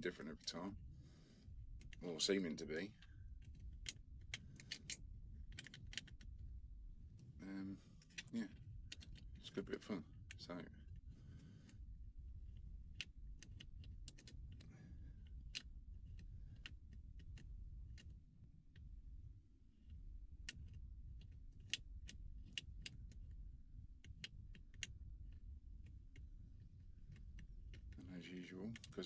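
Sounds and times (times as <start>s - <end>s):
low rumble of handling noise: 0.0s - 29.0s.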